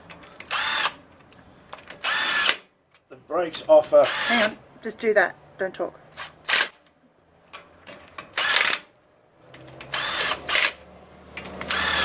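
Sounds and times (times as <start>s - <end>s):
power drill whirring: 0.4s - 1.0s, 1.9s - 2.7s, 4.0s - 4.6s, 8.3s - 8.9s, 9.6s - 10.8s, 11.4s - 12.0s.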